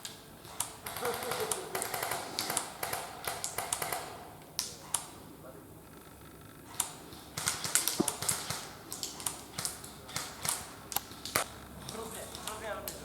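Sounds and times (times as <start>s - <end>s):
airsoft guns firing: 0.4s - 5.2s, 6.7s - 11.5s.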